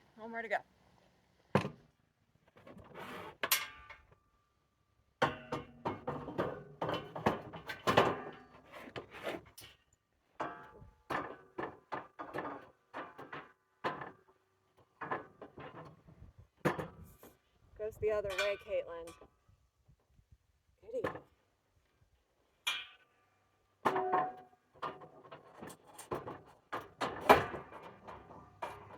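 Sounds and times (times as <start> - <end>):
building materials knocking and clattering: 5.2 - 9.1, 10.4 - 17.0, 23.8 - 28.9.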